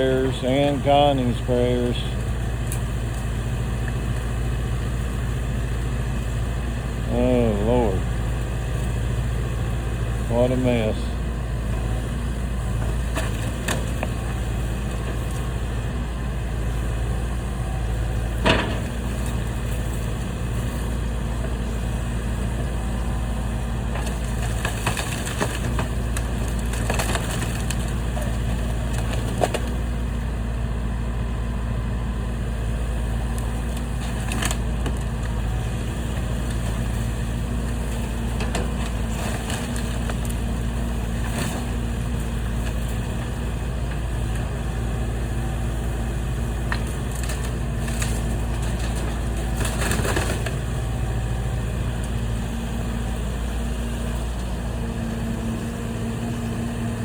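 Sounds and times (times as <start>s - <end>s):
heavy machine engine running: 0.0s - 57.0s
wood cracking and crunching: 11.7s - 17.1s, 23.3s - 30.1s, 33.1s - 52.2s.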